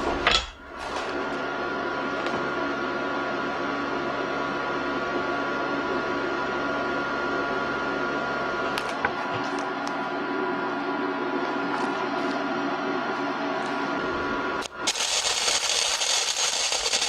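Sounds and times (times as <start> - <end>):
electrical hum: 0.0 - 17.0
welding arc crackling: 14.6 - 17.0.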